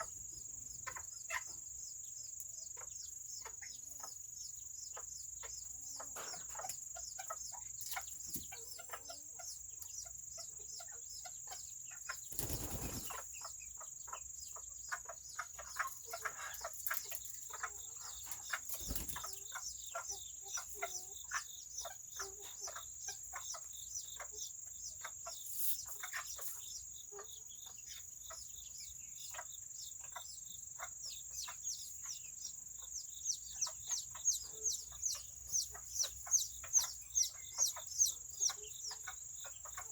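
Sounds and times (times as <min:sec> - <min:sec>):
chickens clucking and peeping: 0:00.0 - 0:39.9
wings flapping: 0:12.3 - 0:13.2, 0:18.7 - 0:19.2.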